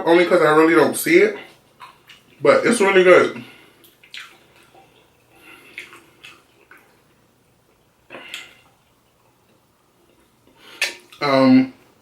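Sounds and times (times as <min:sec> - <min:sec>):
wet mouth eating sounds: 0:01.5 - 0:02.4, 0:03.7 - 0:11.2.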